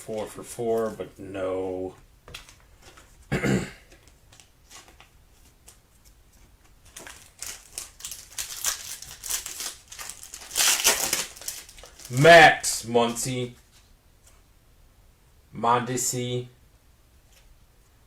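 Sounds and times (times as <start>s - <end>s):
foil wrapper crinkling and tearing: 6.8s - 12.4s.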